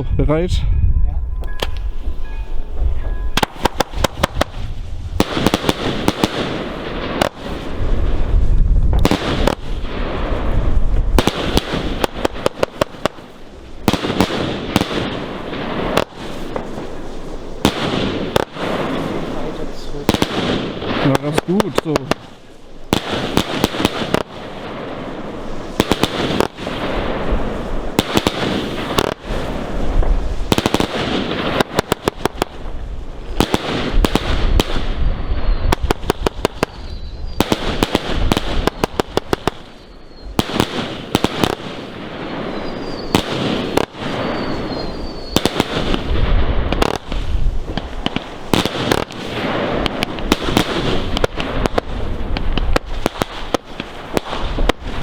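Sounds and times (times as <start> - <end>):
firework crackling: 1.5 - 55.0
firework launch thumps and bangs: 2.7 - 17.0, 42.6 - 55.0
faint firework whistles: 33.6 - 41.6, 42.2 - 46.2.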